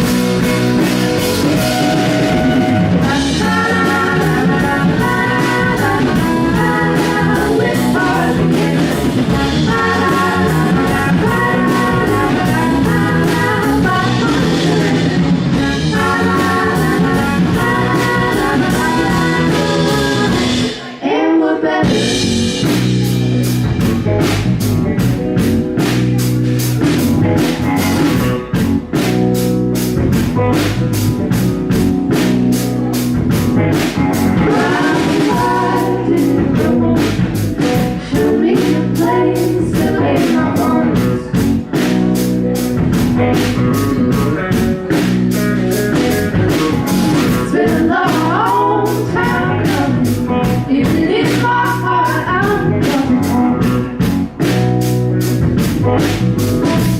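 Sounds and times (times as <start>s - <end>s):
drum kit: 0.0s - 21.0s, 21.8s - 56.9s
electric guitar: 0.0s - 21.1s, 21.7s - 56.9s
person singing: 1.4s - 22.6s, 34.3s - 41.8s, 47.0s - 54.0s.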